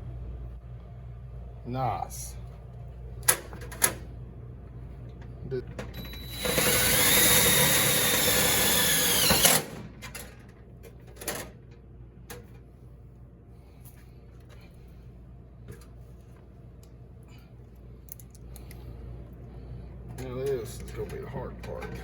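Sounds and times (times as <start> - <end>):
power drill whining: 6.0 - 9.8.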